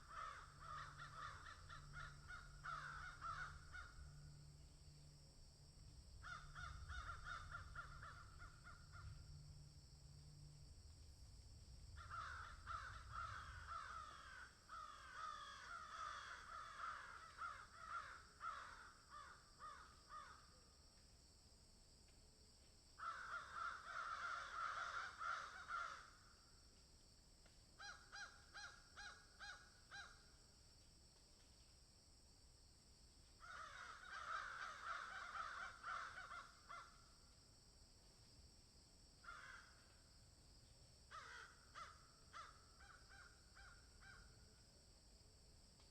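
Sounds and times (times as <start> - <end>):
crows cawing: 0.0 - 4.5, 6.2 - 9.4, 12.0 - 20.5, 23.0 - 26.4, 27.8 - 30.3, 33.4 - 37.0, 39.2 - 39.9, 41.1 - 44.3.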